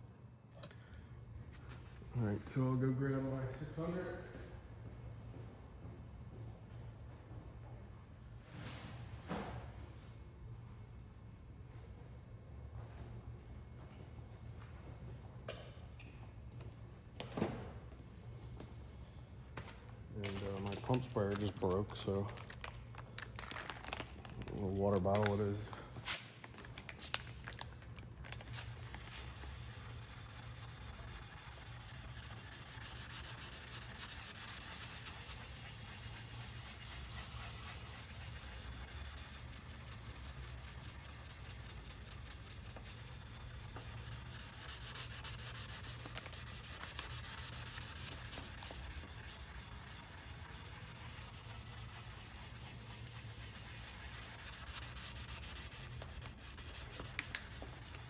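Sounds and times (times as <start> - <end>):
wet sanding scrub: 28.6 - 58.0.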